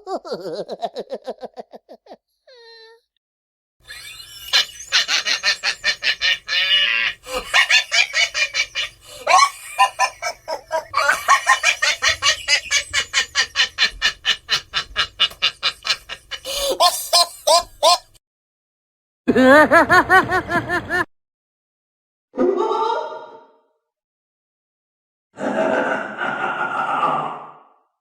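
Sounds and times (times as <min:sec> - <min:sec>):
high rapid cackling laugh: 0:00.0 - 0:02.2, 0:03.9 - 0:18.2, 0:19.3 - 0:21.1
slower lower laughs: 0:00.0 - 0:03.0, 0:03.9 - 0:18.2, 0:19.3 - 0:21.1.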